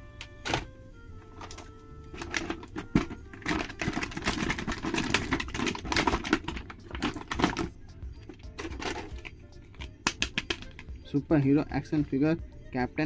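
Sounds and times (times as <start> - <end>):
plastic clicking and crackling: 1.3 - 10.9.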